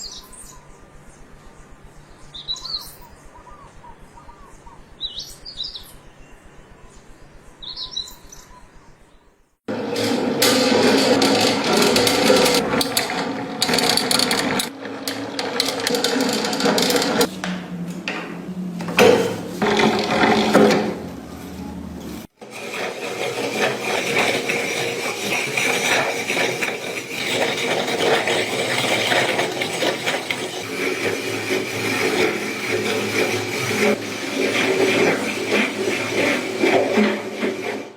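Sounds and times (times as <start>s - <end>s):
ice crusher grinding ice: 9.7s - 17.3s, 18.9s - 21.1s, 22.2s - 37.9s.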